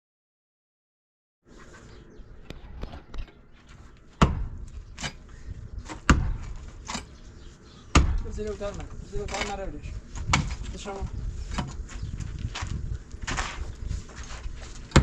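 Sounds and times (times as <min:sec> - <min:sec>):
heavy thuds of blows: 0:04.2 - 0:07.0, 0:07.9 - 0:08.5, 0:10.2 - 0:10.7.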